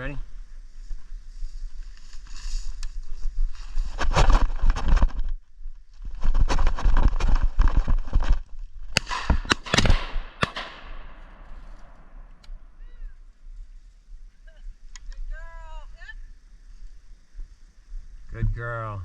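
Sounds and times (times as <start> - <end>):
shotgun shots with echo: 9.0 - 12.7.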